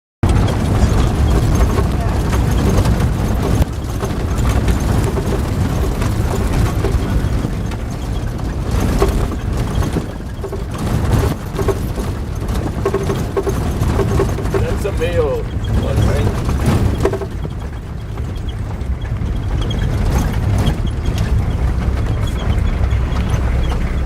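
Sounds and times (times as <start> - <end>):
steady low rumble: 0.2 - 24.0
indistinct voices talking: 0.3 - 9.2, 12.6 - 18.6.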